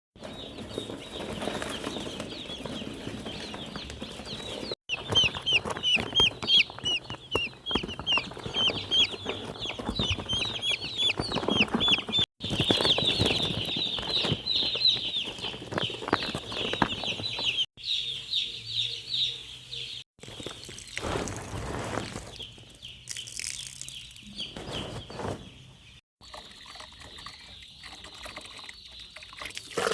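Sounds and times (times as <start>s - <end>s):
chicks peeping: 0.2s - 26.4s
knocks and scuffles: 24.5s - 25.7s.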